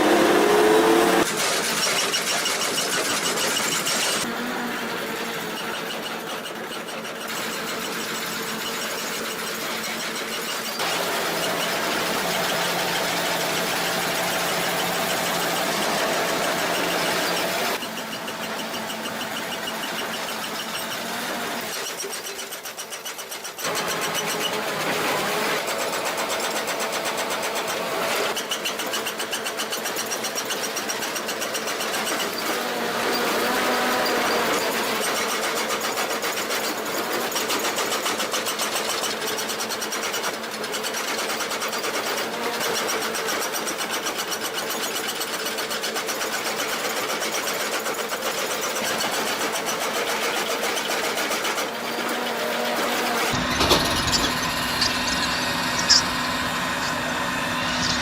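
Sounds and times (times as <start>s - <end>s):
machinery clattering: 0.0s - 51.8s, 53.2s - 58.0s.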